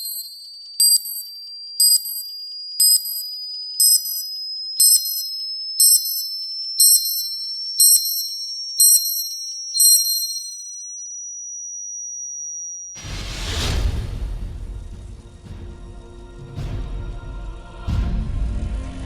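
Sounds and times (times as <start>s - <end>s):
high-pitched bell-like ping: 0.0s - 1.4s, 2.0s - 11.1s.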